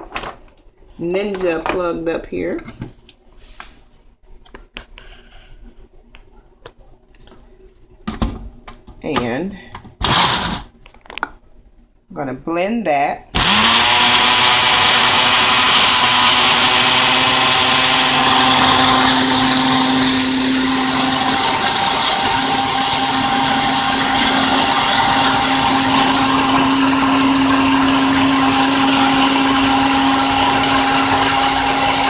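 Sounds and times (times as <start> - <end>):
blender motor whining: 10.0 - 10.7, 13.4 - 32.0.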